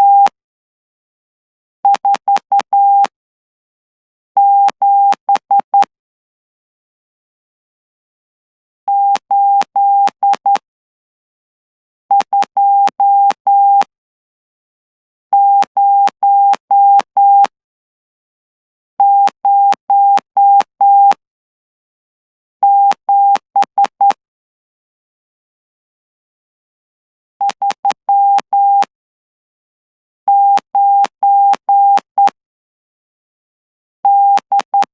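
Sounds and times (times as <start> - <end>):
morse code beeps: 0.0 - 0.3, 8.9 - 10.6, 12.1 - 13.9, 15.4 - 17.6, 19.0 - 21.2, 22.6 - 24.2, 27.4 - 28.9, 30.3 - 32.4, 34.1 - 34.9.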